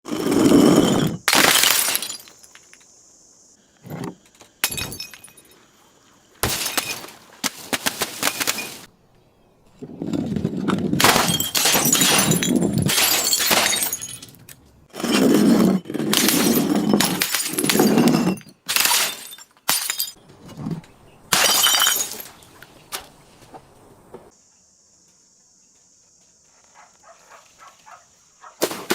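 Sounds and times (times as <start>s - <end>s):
glass crunching and shattering: 1.2s - 2.8s, 4.6s - 5.5s, 6.4s - 8.9s, 11.0s - 14.6s, 15.9s - 20.2s, 21.3s - 22.5s
sharp glass cracks: 6.4s - 8.9s, 11.0s - 14.4s, 18.6s - 20.2s, 21.3s - 22.4s.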